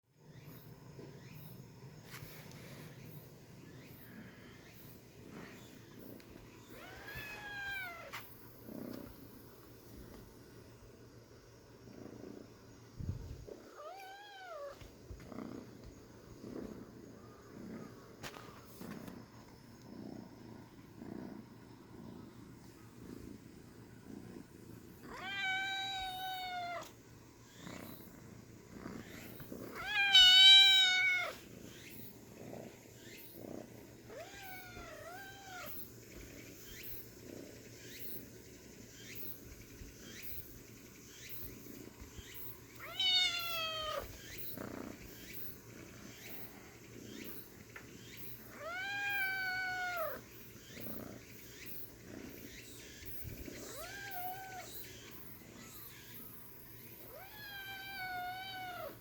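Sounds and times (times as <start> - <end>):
kitten meowing: 13.8 - 14.7, 25.1 - 26.9, 29.8 - 31.4, 42.8 - 44.1, 48.6 - 50.2, 53.7 - 54.7, 57.1 - 59.0.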